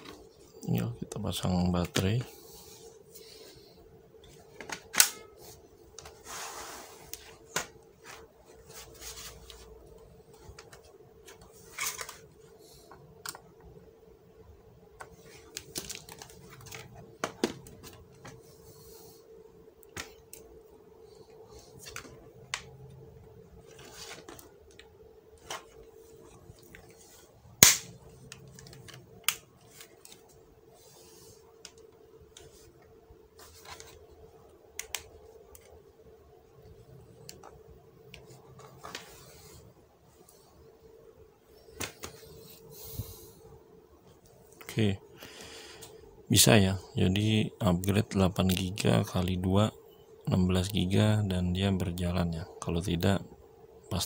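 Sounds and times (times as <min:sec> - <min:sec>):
faint steady hum: 0:00.0 - 0:54.0
plastic laptop parts clicking: 0:34.8 - 0:35.8.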